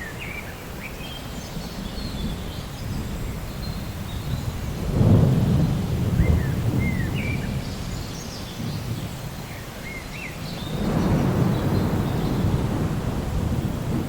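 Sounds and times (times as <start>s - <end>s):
steady rain: 0.0s - 14.0s
rolling thunder: 2.2s - 9.5s, 10.5s - 14.0s.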